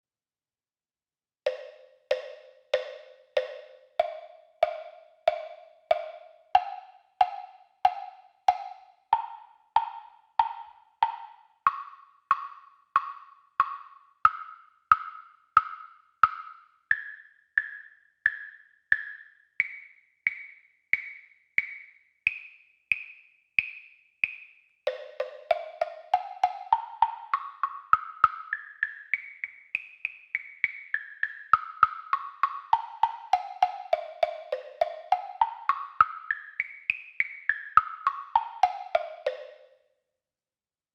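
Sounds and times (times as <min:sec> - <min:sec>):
temple blocks knocking: 0:01.5 - 0:20.4, 0:24.9 - 0:29.3, 0:30.6 - 0:39.7.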